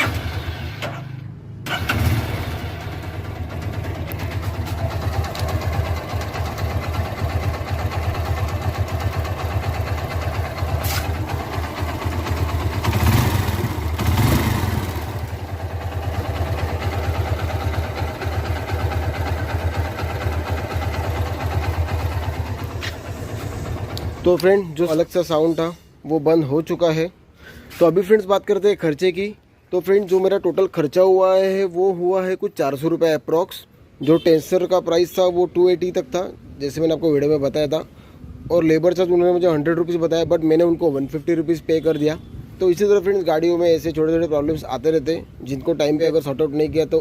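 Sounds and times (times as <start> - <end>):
vehicle engine starting and idling: 0.0 - 25.2.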